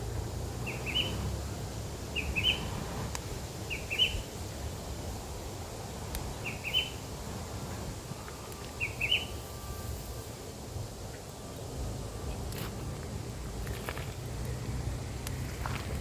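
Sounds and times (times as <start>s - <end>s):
bird chirping: 0.6s - 1.3s, 2.1s - 2.8s, 3.7s - 4.2s, 6.4s - 7.0s, 8.8s - 9.8s.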